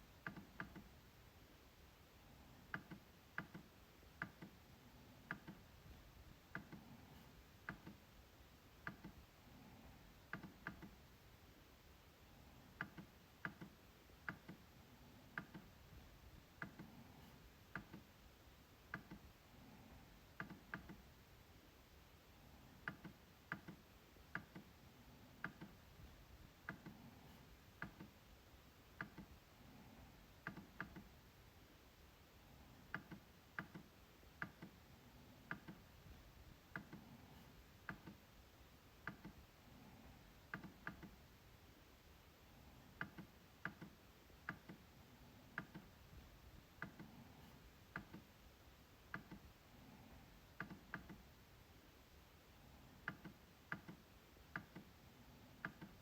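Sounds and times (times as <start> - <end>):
trackpad clicking: 5.3 - 5.6, 43.0 - 44.8.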